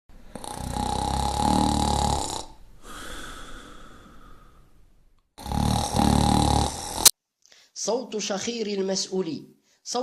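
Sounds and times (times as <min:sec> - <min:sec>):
person snoring: 0:00.3 - 0:04.6, 0:05.4 - 0:07.1.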